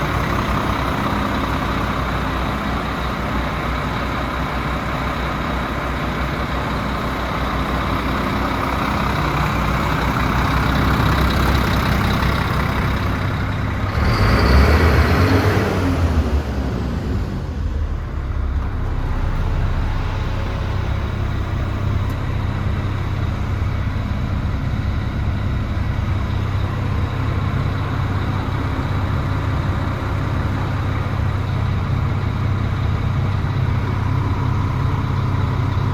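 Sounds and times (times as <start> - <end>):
diesel lorry engine idling: 0.0 - 35.9.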